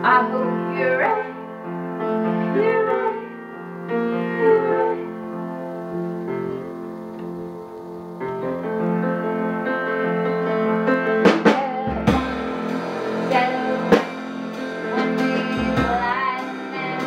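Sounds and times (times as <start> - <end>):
guitar and keyboard chords: 0.0 - 17.0
sharp drum hits: 11.3 - 17.0.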